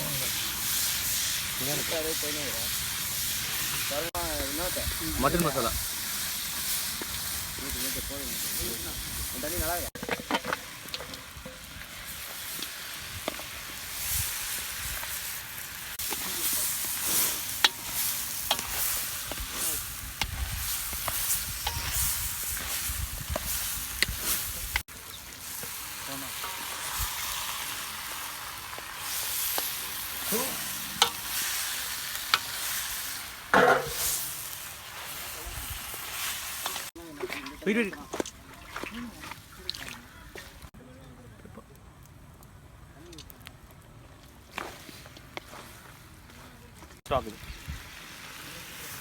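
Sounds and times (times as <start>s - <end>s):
spices sizzling in hot oil: 0.0s - 40.7s, 46.8s - 49.0s.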